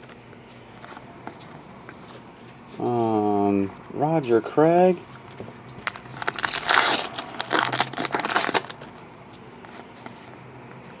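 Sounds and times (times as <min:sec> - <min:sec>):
packaging crinkling and rustling: 0:05.8 - 0:10.4.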